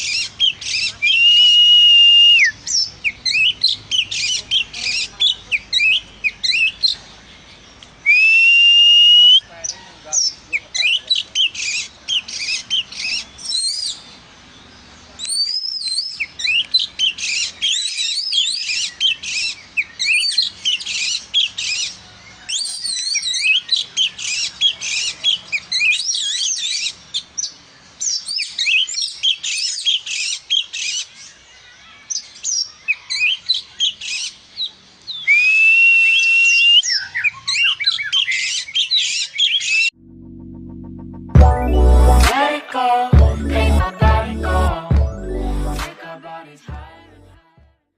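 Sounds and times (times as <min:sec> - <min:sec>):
bird singing chirps and trills: 0:00.0 - 0:01.2, 0:02.6 - 0:08.0, 0:09.5 - 0:35.3, 0:36.6 - 0:39.9.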